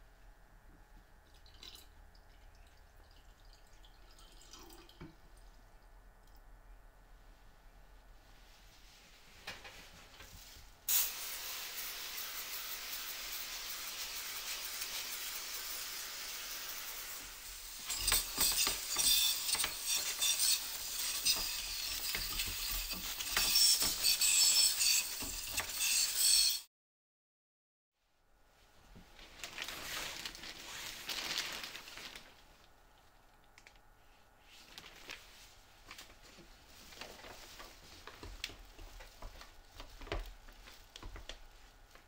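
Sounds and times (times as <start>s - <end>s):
liquid spray hissing: 10.9s - 18.0s.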